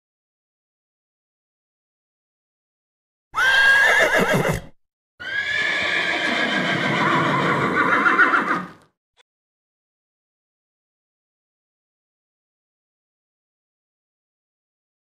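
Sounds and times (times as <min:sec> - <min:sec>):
horse whinnying: 0:03.4 - 0:08.9.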